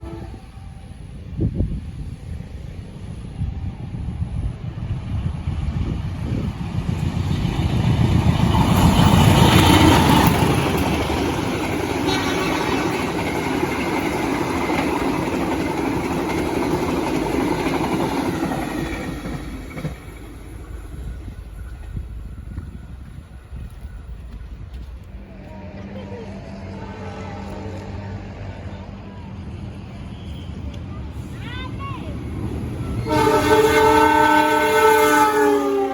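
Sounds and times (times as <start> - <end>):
train rumbling past: 0.0 - 35.9.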